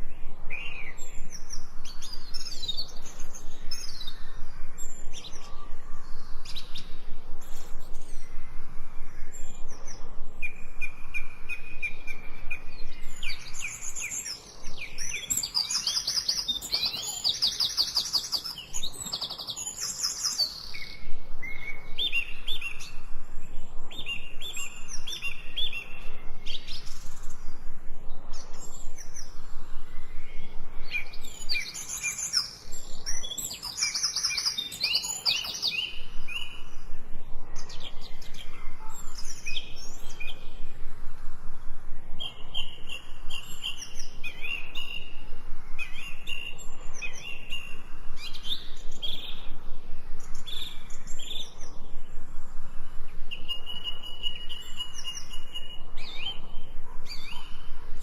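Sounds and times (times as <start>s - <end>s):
birds chirping and singing: 0.0s - 40.7s, 42.1s - 52.0s, 53.2s - 58.0s.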